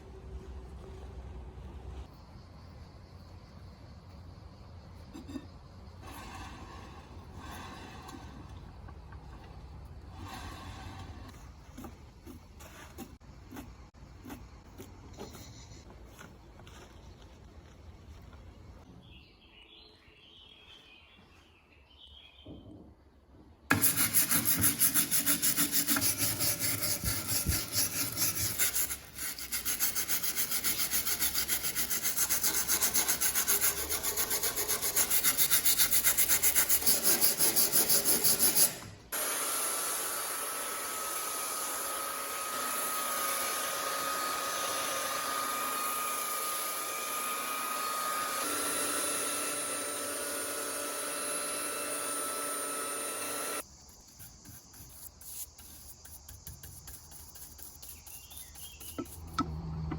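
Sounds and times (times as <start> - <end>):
hand tool rubbing wood: 23.7 - 38.9, 43.3 - 59.6.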